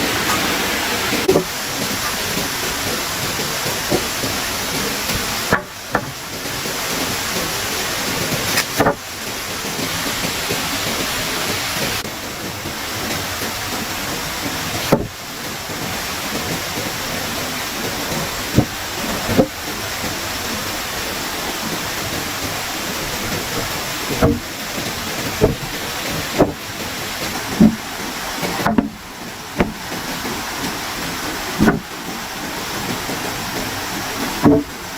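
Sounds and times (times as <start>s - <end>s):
steady rushing noise: 0.0s - 34.9s
short sharp knocks: 5.5s - 6.2s, 8.6s - 9.0s, 23.2s - 24.6s, 25.3s - 26.7s, 27.5s - 29.0s, 29.6s - 29.9s, 31.6s - 31.9s, 34.4s - 34.7s.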